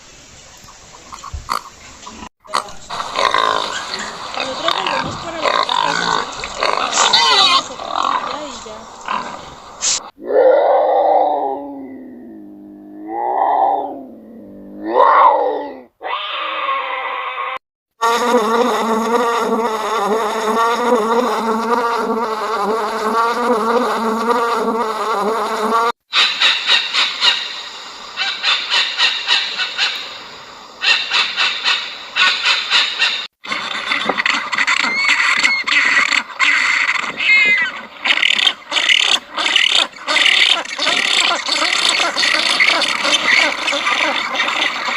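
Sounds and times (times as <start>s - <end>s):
insect buzzing: 1.1s - 10.1s, 18.0s - 26.0s, 34.9s - 44.7s.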